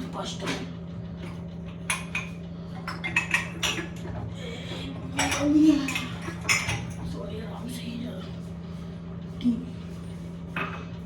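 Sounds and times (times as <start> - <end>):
steady low hum: 0.0 - 11.0
metal utensils and dishes clinking: 2.9 - 4.1, 5.2 - 7.1.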